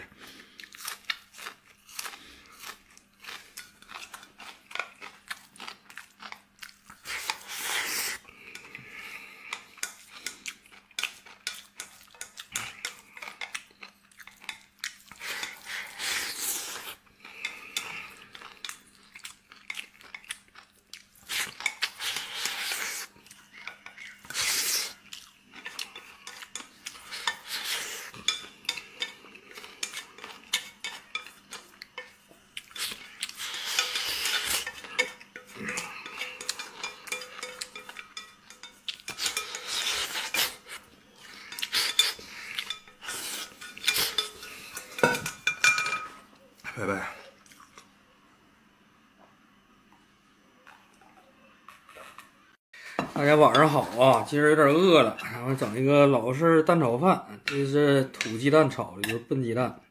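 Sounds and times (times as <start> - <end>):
person chewing: 0.0 - 45.0
utensils scraping a bowl: 14.4 - 18.7, 21.2 - 46.2.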